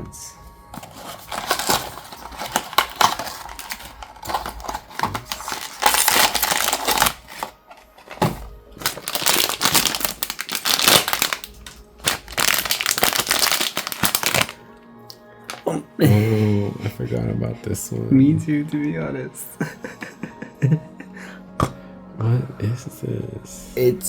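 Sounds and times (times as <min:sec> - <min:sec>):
packaging crinkling and crushing: 0:00.7 - 0:14.6.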